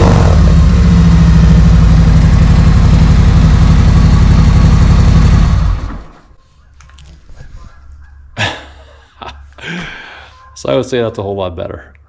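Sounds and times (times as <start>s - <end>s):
motorcycle engine running loud: 0.0s - 6.1s.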